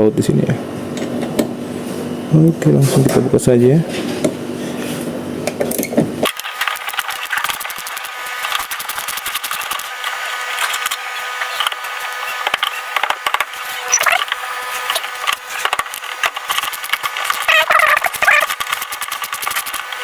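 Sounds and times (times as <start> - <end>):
wrench clicking and ticking: 6.7 - 9.9, 15.8 - 19.9.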